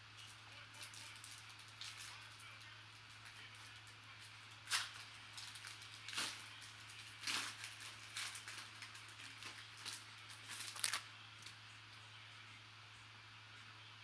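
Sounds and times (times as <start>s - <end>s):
trading cards flipping: 7.2s - 11.6s.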